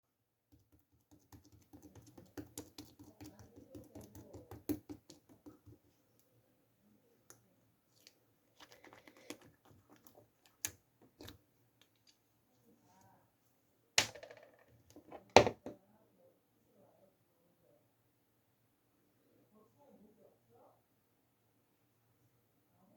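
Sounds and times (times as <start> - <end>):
faint clicking and tapping: 0.5 - 6.3, 7.2 - 12.2.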